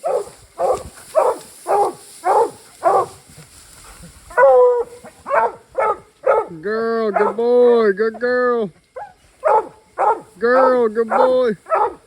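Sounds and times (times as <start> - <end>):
hounds barking: 0.0 - 3.3, 4.3 - 7.5, 9.0 - 12.0
hound bawling: 4.3 - 7.4.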